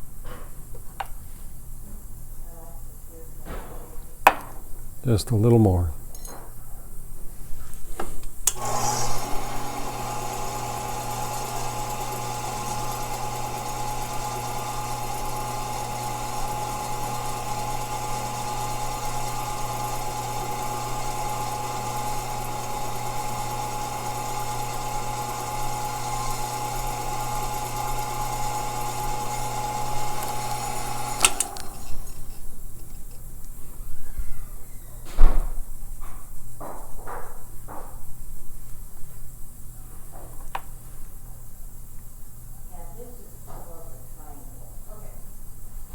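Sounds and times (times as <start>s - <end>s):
polishing machine motor hum and whine: 8.5s - 32.2s.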